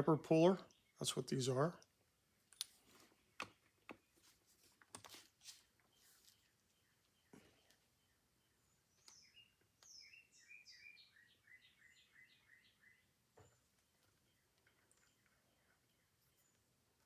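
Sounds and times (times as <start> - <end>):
bird chirps: 5.8 - 17.0.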